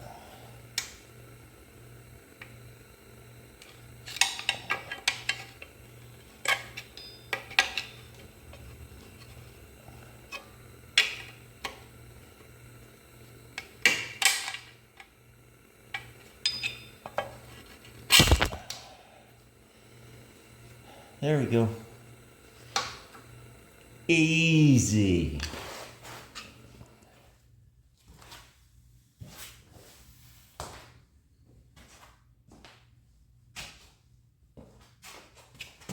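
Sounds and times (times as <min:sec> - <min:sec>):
tools clanking on steel parts: 0:03.6 - 0:09.3, 0:15.9 - 0:17.4.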